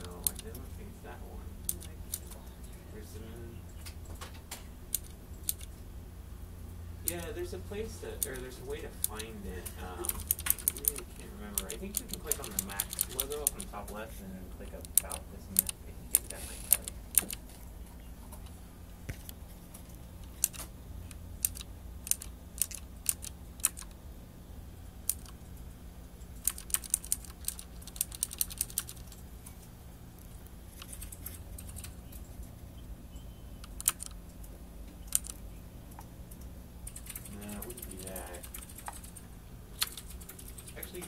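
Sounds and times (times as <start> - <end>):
clicky mechanical keyboard typing: 0.0 - 0.7, 1.6 - 2.7, 3.9 - 5.8, 8.2 - 14.0, 14.7 - 17.6, 20.2 - 24.0, 25.0 - 25.5, 26.3 - 29.2, 30.8 - 32.3, 33.6 - 34.2, 34.9 - 35.4, 36.0 - 39.2, 39.8 - 41.0
steady low hum: 0.0 - 41.0.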